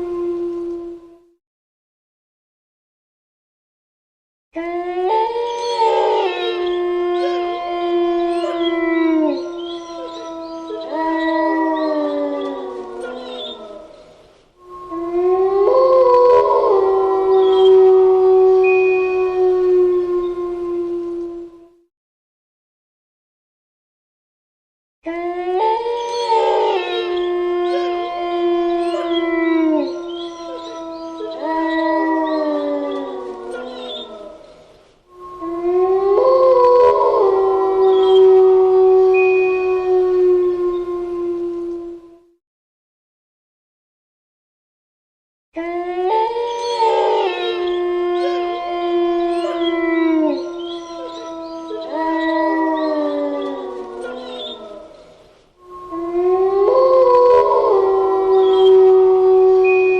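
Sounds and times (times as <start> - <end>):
wolves howling: 0.0 - 1.4, 4.6 - 21.8, 25.0 - 42.4, 45.6 - 59.9
wolves yipping: 49.3 - 55.0.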